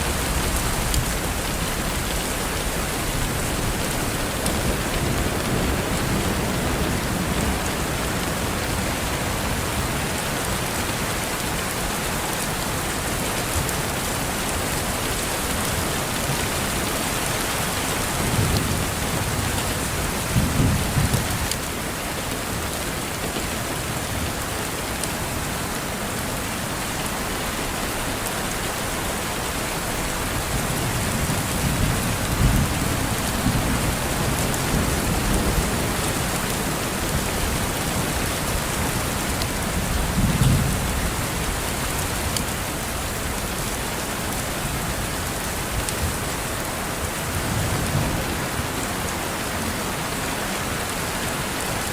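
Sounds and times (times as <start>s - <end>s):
rain on a window: 0.0s - 51.9s.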